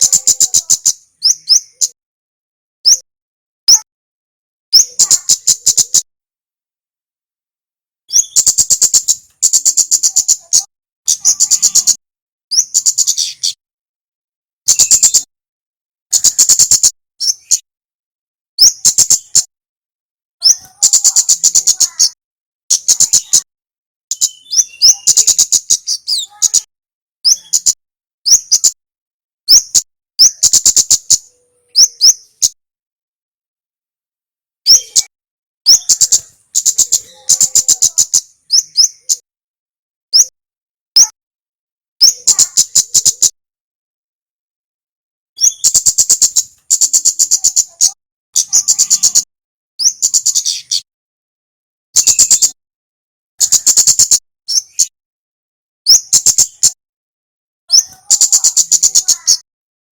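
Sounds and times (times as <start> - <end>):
songbird singing sharp chip notes: 0.0 - 2.0, 8.1 - 13.6, 14.7 - 15.3, 20.4 - 23.5, 24.1 - 28.8, 29.5 - 32.6, 34.7 - 35.1, 35.7 - 39.2, 40.2 - 40.4, 45.4 - 50.9, 52.0 - 52.6.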